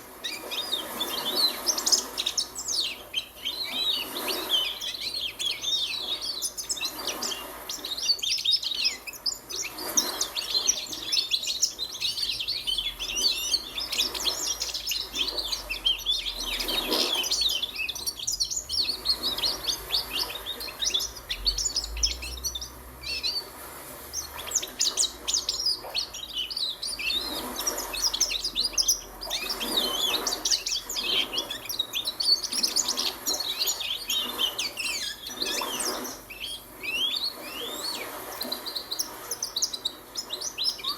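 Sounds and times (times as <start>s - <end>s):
bird twittering and warbling: 0.0s - 40.9s.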